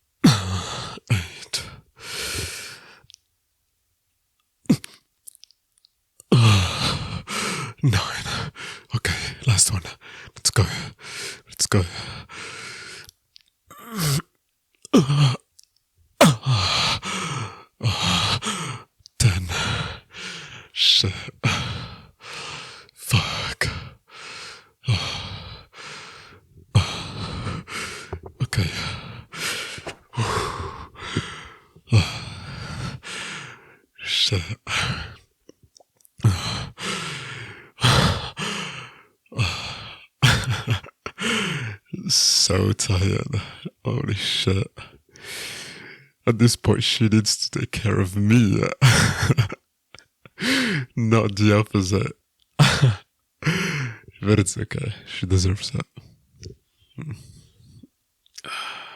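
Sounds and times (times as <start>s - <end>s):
man groaning with strain: 15.0s - 15.4s, 16.2s - 16.6s
man breathing hard: 24.1s - 33.9s, 50.4s - 50.9s.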